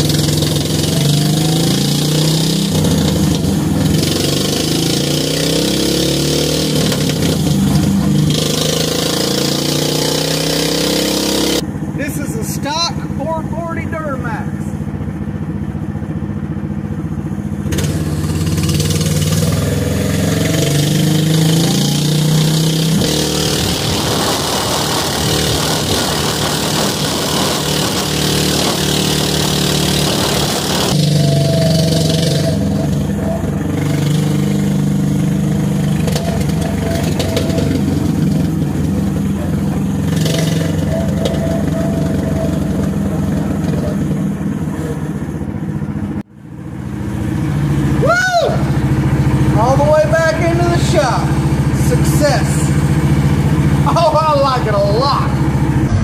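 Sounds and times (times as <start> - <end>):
small car engine under throttle: 0.0 - 56.0
loud rushing noise: 22.3 - 31.0, 55.1 - 56.0.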